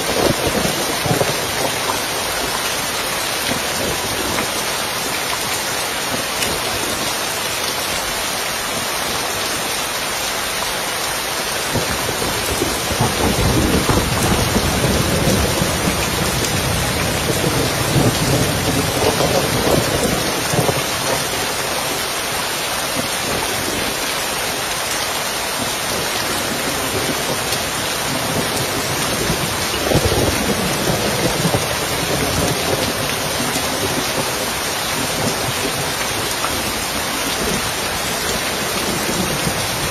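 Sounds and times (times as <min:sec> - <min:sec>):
rain falling on a roof: 0:00.0 - 0:39.9
thunder rumbling: 0:11.6 - 0:22.0, 0:25.6 - 0:39.9.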